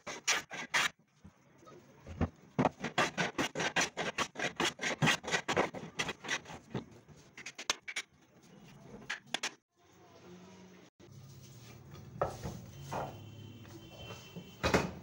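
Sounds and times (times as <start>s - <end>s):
scraping strokes on wood: 2.6s - 6.7s.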